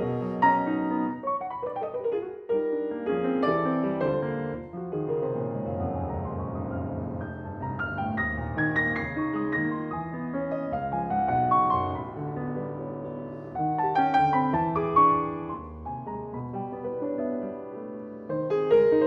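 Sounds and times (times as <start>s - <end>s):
solo piano playing: 0.0s - 19.0s.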